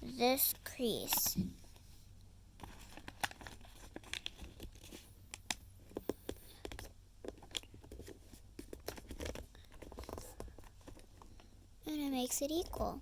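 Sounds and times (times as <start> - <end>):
paper being folded and creased: 2.6 - 11.4.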